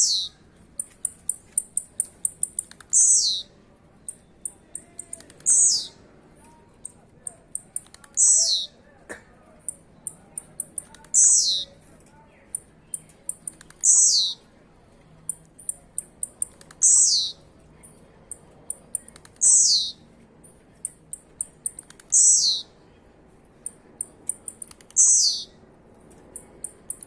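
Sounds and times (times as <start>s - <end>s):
bird buzzy call-song: 0.0s - 0.4s, 1.0s - 3.5s, 8.2s - 8.7s, 11.1s - 11.7s, 13.8s - 14.4s, 16.8s - 17.4s, 19.4s - 20.0s, 21.6s - 22.7s, 24.3s - 25.5s.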